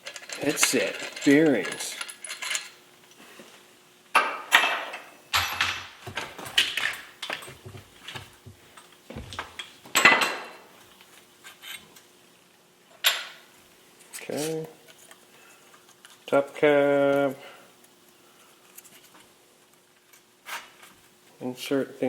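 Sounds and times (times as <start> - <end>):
metal parts clanking: 0.0 - 2.8.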